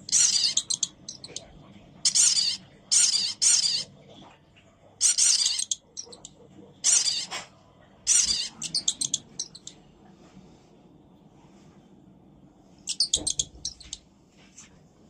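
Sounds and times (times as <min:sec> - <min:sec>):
mouse squealing: 0:00.0 - 0:03.9, 0:05.0 - 0:07.5, 0:08.1 - 0:09.8, 0:12.9 - 0:14.0.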